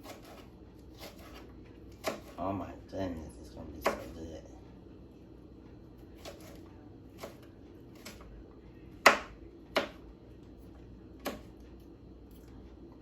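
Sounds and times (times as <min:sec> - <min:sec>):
knife chopping on cutting board: 0:00.0 - 0:02.4, 0:03.8 - 0:04.2, 0:06.2 - 0:08.3, 0:09.0 - 0:10.1, 0:11.2 - 0:11.5.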